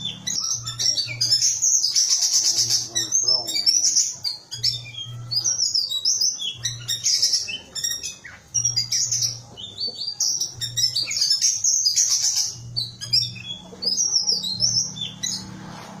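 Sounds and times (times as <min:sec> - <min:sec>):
bird chirping high squeaky notes: 0:00.0 - 0:16.0
low hum: 0:12.4 - 0:16.0.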